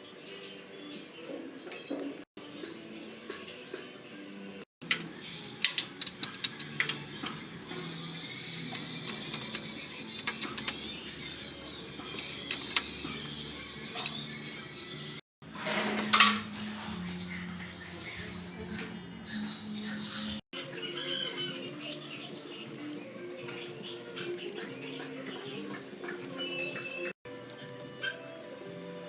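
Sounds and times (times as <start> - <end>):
metallic clicks of hand tools: 4.8 - 7.4, 8.6 - 13.4.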